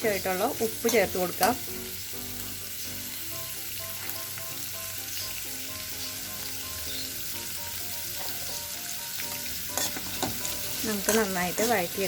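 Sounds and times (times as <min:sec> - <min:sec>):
onions sizzling in oil: 0:00.0 - 0:12.0
soft background music: 0:00.0 - 0:12.0.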